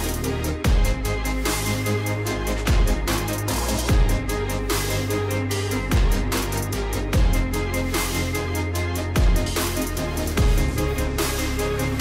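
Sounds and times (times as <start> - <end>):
electronic music with deep bass: 0.0 - 12.0
heavy bass hit: 2.6 - 4.6, 7.0 - 7.7, 10.3 - 11.3.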